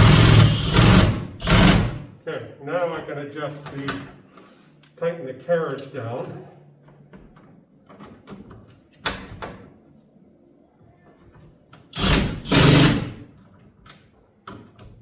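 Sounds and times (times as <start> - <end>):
cordless impact gun: 0.0 - 2.1, 12.0 - 13.2.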